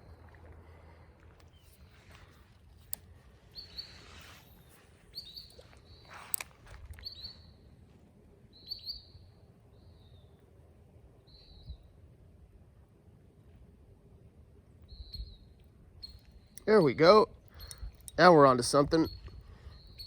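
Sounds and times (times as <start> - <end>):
songbird chirping: 0.0 - 12.0, 14.8 - 20.0
sharp clicks: 17.4 - 18.3.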